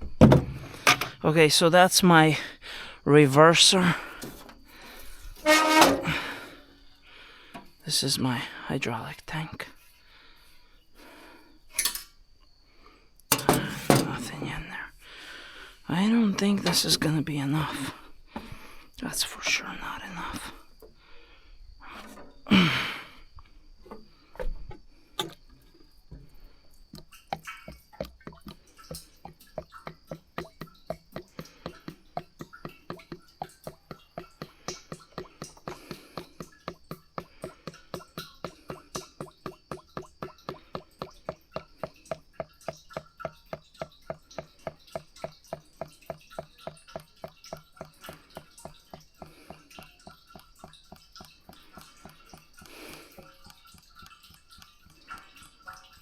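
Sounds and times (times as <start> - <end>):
fluid glugging from container: 13.3 - 15.6, 16.4 - 19.3, 21.8 - 56.0.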